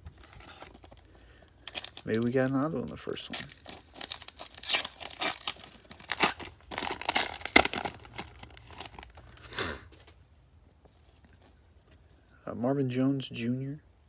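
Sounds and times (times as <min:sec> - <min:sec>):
wrapper being torn and crinkled: 0:00.0 - 0:09.5.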